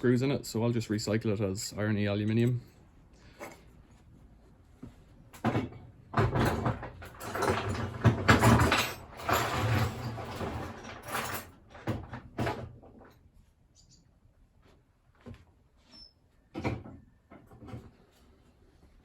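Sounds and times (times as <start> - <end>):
metal scraping and rattling: 5.4 - 12.0.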